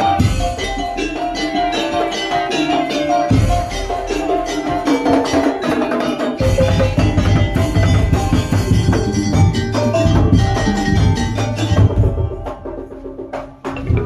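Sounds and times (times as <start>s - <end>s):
heavy low drum: 0.0s - 14.0s
pitched percussion melody: 0.0s - 14.0s.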